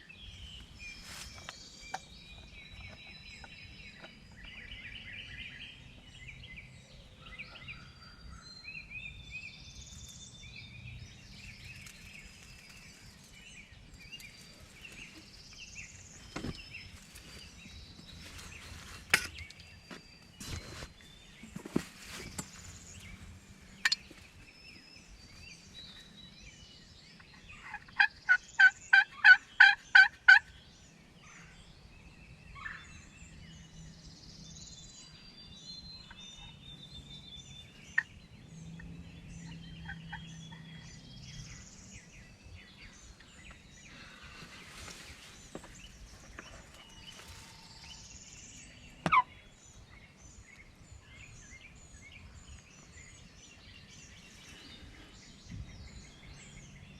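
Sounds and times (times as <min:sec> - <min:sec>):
songbirds singing: 0:00.0 - 0:56.9
turkey yelping: 0:27.6 - 0:30.4, 0:49.1 - 0:49.3.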